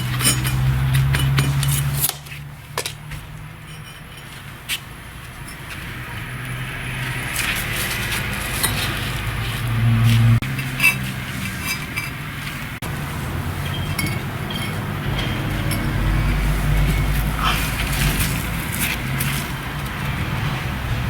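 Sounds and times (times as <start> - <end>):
light clinks and knocks: 0.0 - 4.8, 13.6 - 19.4.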